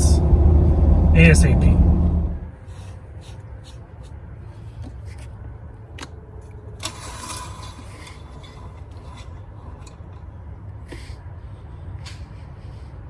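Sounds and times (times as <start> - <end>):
steady low rumble: 0.0 - 2.7
dipstick scraping and rubbing: 2.6 - 5.4.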